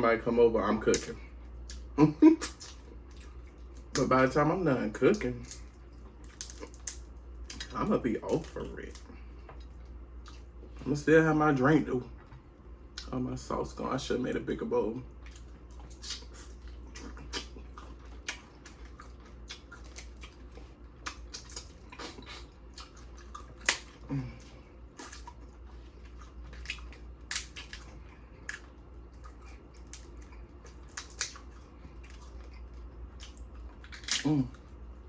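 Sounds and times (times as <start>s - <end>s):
low steady hum: 0.0s - 35.0s
crab shells cracking: 5.4s - 7.7s, 22.8s - 25.3s, 26.4s - 31.5s, 33.3s - 34.5s.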